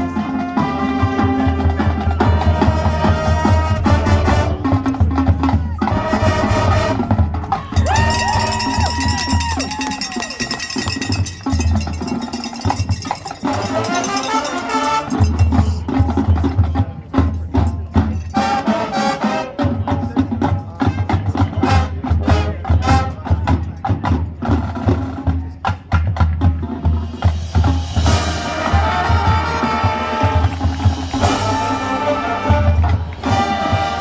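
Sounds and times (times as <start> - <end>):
sharp percussion clicks: 7.6 - 16.2.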